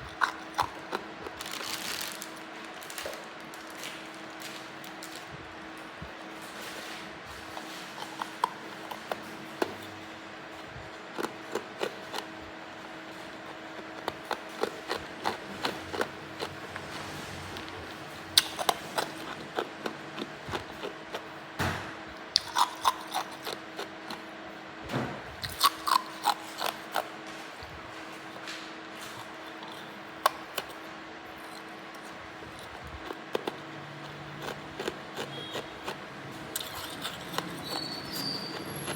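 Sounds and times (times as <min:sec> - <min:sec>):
ice being chewed and crunched: 0:00.0 - 0:05.3, 0:07.3 - 0:10.1, 0:10.7 - 0:21.4, 0:22.4 - 0:24.3, 0:25.4 - 0:27.2, 0:29.0 - 0:38.9.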